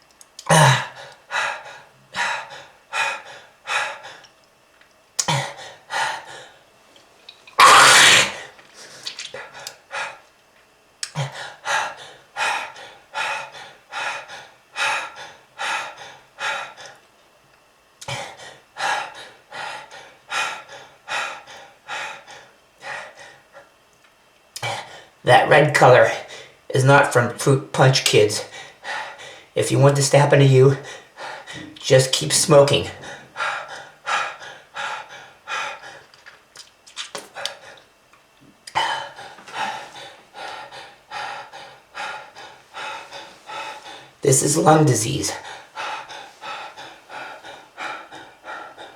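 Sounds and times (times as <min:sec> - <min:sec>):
person coughing harshly: 0:00.5 - 0:00.9, 0:07.6 - 0:08.4
gasping breaths: 0:45.4 - 0:48.9.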